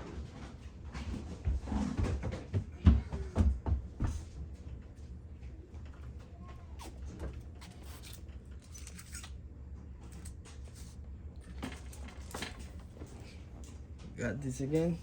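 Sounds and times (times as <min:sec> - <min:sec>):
low steady hum: 0:00.1 - 0:15.0
wires and plastic parts rustling: 0:05.8 - 0:15.0.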